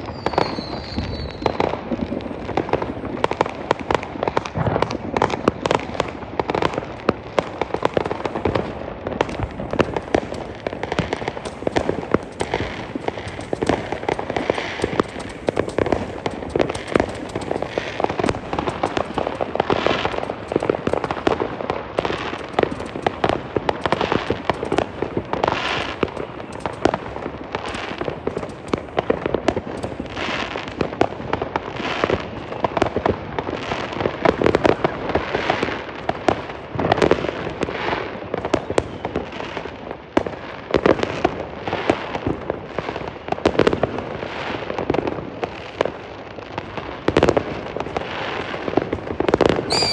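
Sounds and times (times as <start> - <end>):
fireworks bangs and cracks: 0.0 - 49.9
firework hissing bursts: 9.3 - 30.5, 49.7 - 49.9.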